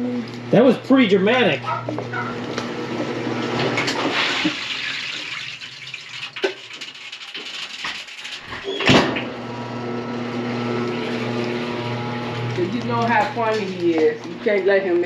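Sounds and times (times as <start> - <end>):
water running down a drain: 2.6 - 12.6.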